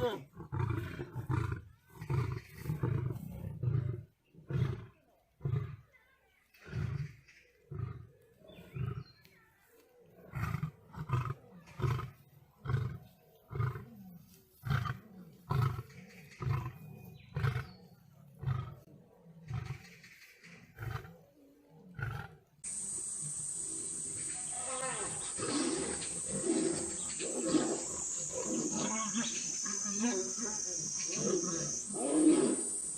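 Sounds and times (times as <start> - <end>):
lion roaring: 21.9 - 30.3, 31.1 - 32.9.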